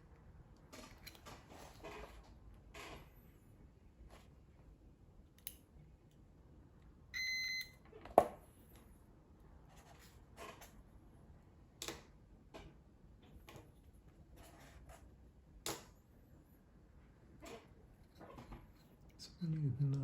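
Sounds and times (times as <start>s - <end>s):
multimeter continuity beep: 7.2s - 7.8s.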